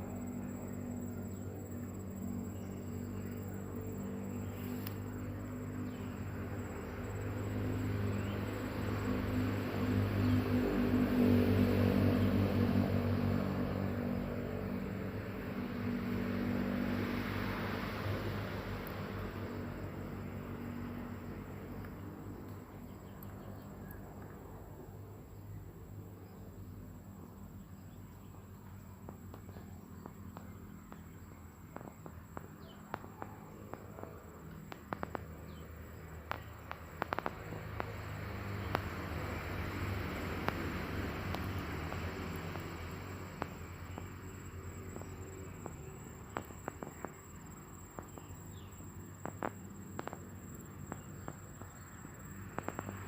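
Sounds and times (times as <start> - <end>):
steady low hum: 0.0 - 53.0
sharp clicks: 36.2 - 38.0.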